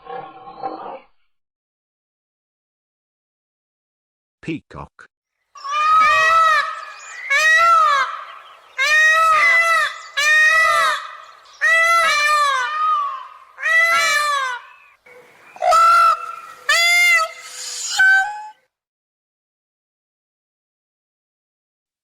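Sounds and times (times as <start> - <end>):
peacock calling: 5.6 - 18.6.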